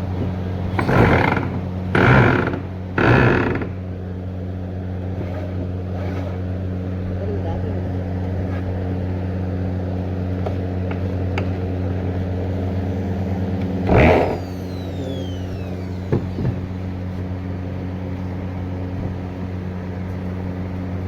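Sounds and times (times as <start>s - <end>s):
woodworking machine motor humming: 0.0s - 21.0s
loud burst of noise: 13.8s - 16.9s.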